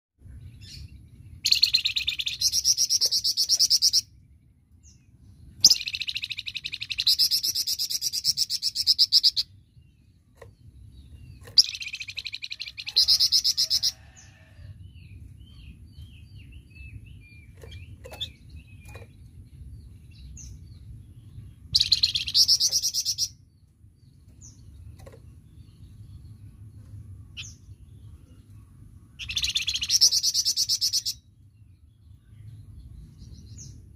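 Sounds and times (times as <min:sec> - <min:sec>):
soft bird chirps: 0:00.2 - 0:33.9
low rumble: 0:14.7 - 0:22.1, 0:23.4 - 0:29.4, 0:31.2 - 0:33.9.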